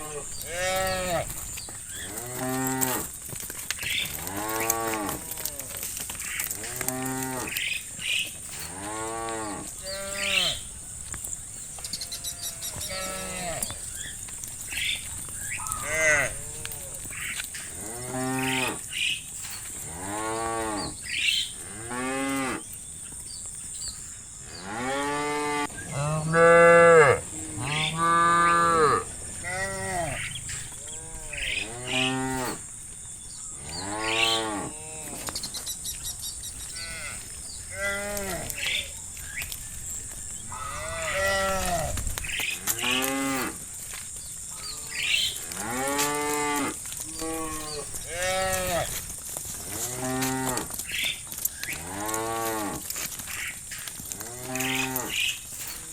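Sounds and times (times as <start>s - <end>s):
cattle mooing: 0.0s - 1.3s, 12.0s - 13.8s, 15.6s - 17.1s, 24.6s - 32.6s, 54.2s - 55.2s.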